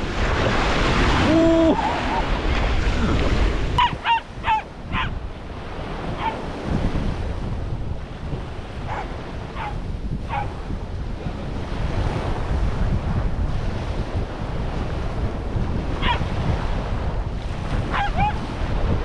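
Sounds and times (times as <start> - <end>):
surf washing onto beach: 0.0 - 19.0
wind buffeting microphone: 0.0 - 19.0
small dog yipping: 3.8 - 5.2, 6.2 - 6.4, 8.9 - 10.5, 16.0 - 16.3, 17.9 - 18.4.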